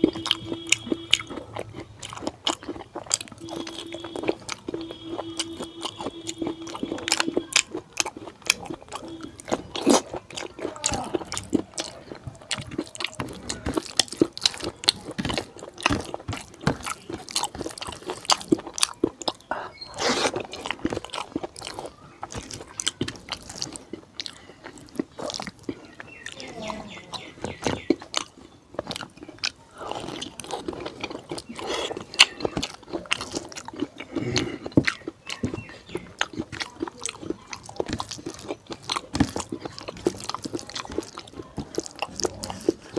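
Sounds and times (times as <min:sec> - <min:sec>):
wet chewing and crunching: 0:00.0 - 0:42.9.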